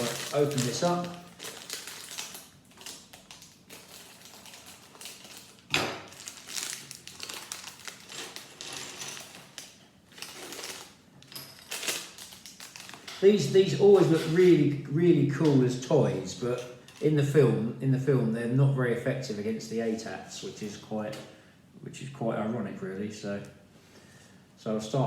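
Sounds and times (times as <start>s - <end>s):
plastic packaging crinkling: 0.0s - 14.6s.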